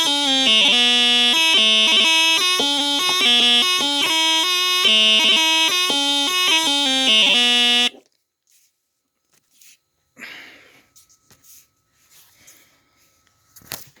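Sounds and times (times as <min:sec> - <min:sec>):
heavy breath out: 0:10.2 - 0:10.9.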